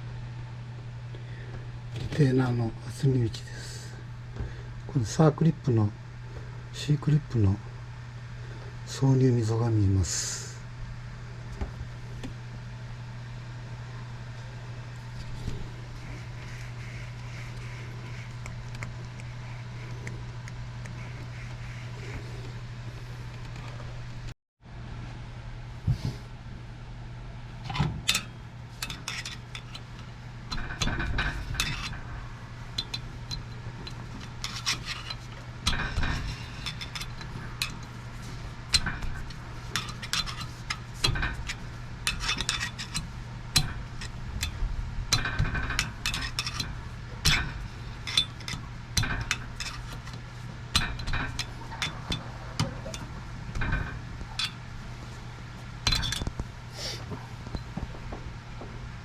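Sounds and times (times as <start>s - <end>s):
steady low hum: 0.0s - 59.0s
metal parts clinking and knocking: 27.7s - 32.1s, 32.7s - 54.6s, 55.8s - 56.4s.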